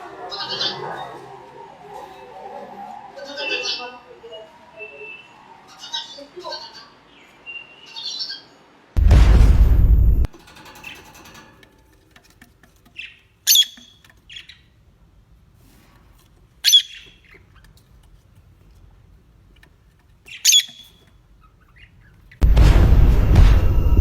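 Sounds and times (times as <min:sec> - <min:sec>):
loud dense noise burst: 0:09.0 - 0:10.3, 0:22.4 - 0:24.0.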